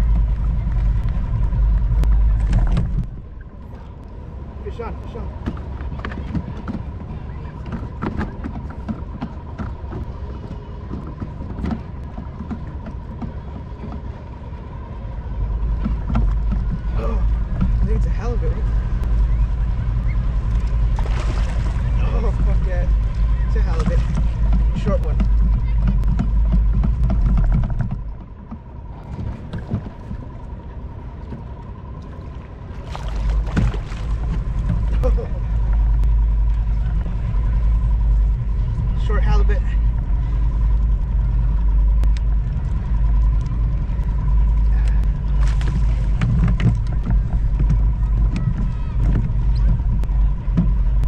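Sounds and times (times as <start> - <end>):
steady low rumble: 0.0 - 51.0
wind buffeting microphone: 0.0 - 51.0
handling knocks and clicks on kayak: 5.4 - 14.1, 23.7 - 30.2.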